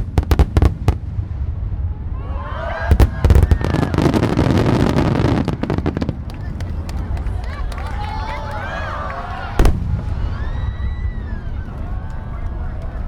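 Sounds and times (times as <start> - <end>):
firework booms: 0.0 - 6.6, 9.6 - 11.3
firework bangs: 0.0 - 12.4
firework crackling: 2.7 - 8.8.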